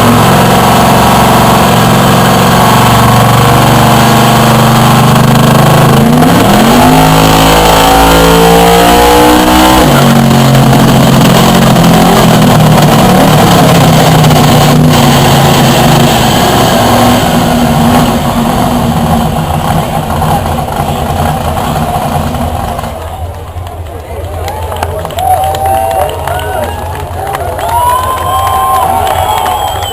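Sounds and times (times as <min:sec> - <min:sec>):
supercharged engine revving: 0:00.0 - 0:23.3.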